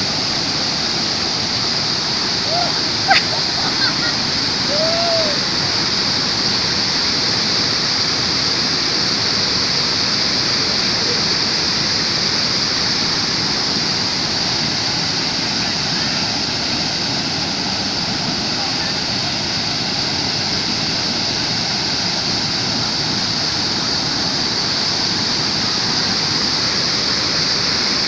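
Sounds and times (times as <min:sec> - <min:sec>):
waterfall rushing and splashing: 0:00.0 - 0:28.0.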